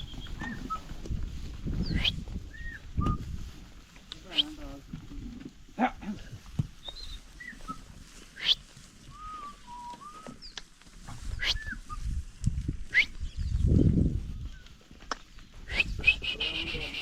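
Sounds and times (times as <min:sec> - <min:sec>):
bird chirps and whistles: 0:11.3 - 0:12.1.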